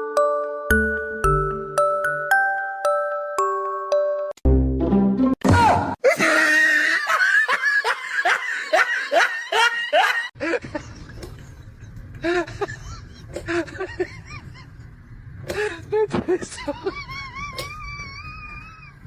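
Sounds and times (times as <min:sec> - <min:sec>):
person laughing hard: 0:06.0 - 0:11.1, 0:12.2 - 0:14.9, 0:15.6 - 0:19.0.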